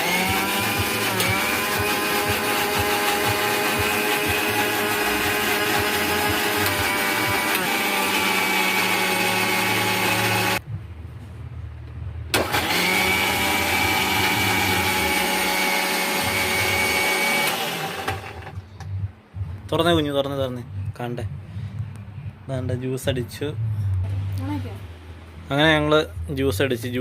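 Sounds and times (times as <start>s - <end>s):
mixer grinder motor whine: 0.0s - 10.6s, 12.4s - 18.6s.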